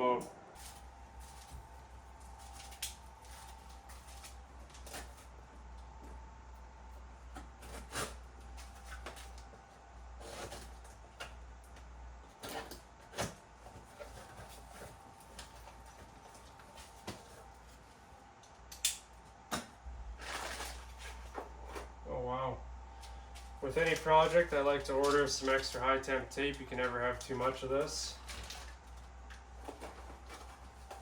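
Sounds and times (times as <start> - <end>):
steady low hum: 0.0 - 31.0.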